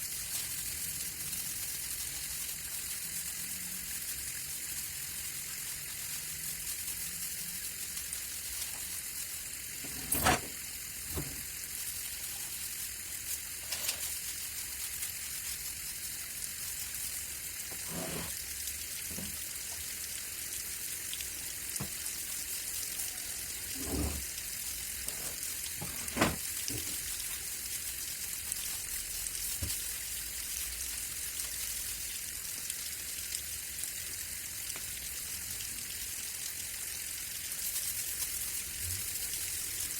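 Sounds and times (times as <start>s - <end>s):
water spraying hiss: 8.6s - 19.6s.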